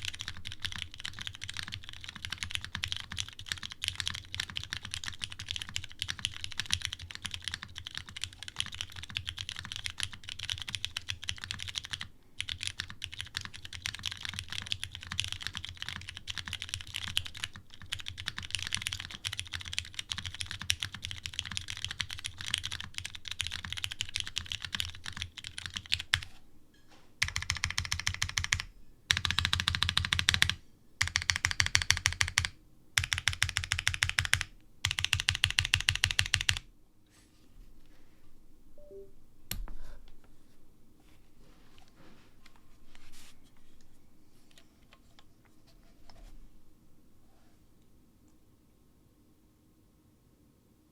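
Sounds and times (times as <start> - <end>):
mechanical keyboard typing: 0.0 - 26.3, 27.2 - 36.6.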